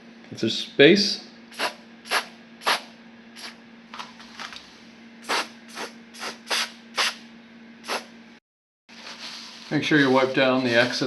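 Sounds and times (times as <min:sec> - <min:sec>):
aerosol spray hissing spurts: 0:01.6 - 0:03.6, 0:05.2 - 0:07.2, 0:07.8 - 0:08.1.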